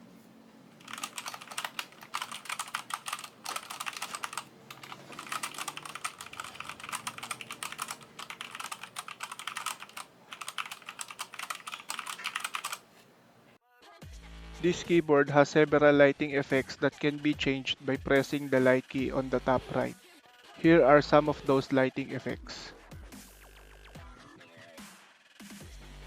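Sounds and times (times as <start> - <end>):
mechanical keyboard typing: 0.8 - 12.9.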